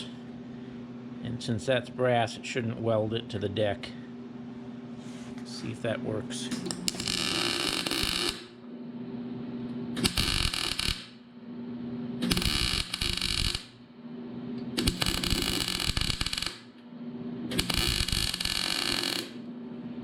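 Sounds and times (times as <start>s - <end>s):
steady low hum: 0.0s - 20.0s
welding arc crackling: 6.7s - 8.5s, 10.0s - 11.2s, 12.3s - 13.8s, 14.8s - 16.7s, 17.5s - 19.4s.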